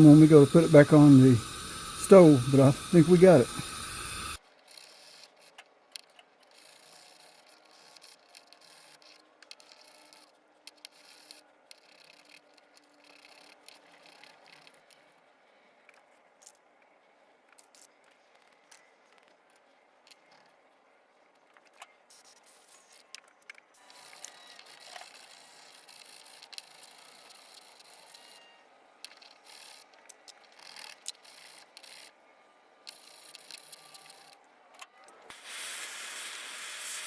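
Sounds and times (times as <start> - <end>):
small parts clicking and scraping: 0.0 - 20.7, 21.3 - 32.2, 32.8 - 35.4.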